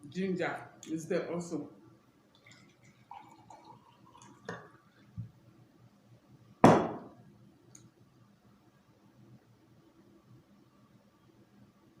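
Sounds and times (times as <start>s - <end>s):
glass clinking on table: 6.6s - 7.2s
glass set down hard: 6.6s - 7.2s.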